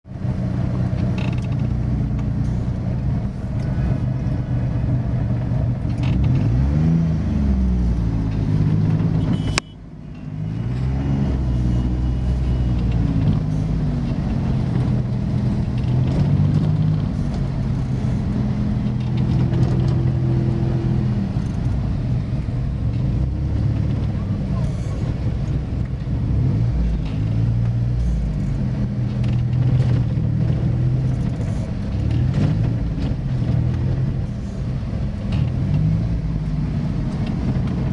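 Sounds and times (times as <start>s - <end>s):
vehicle engine revving: 0.1s - 37.9s.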